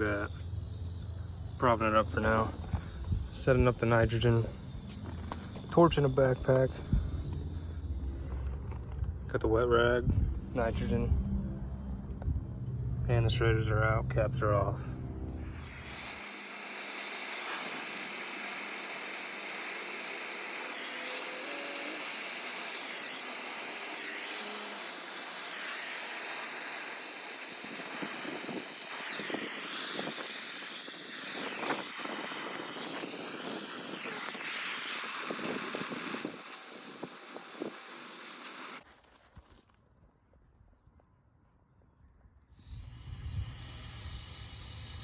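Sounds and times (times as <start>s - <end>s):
torch flame hissing: 15.4s - 38.9s, 42.6s - 45.0s.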